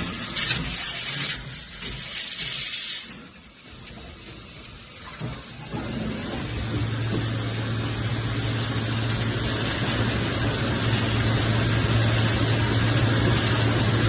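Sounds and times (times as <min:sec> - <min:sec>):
lathe motor hum: 0:05.7 - 0:14.0
whir of lathe cutting: 0:05.7 - 0:14.0.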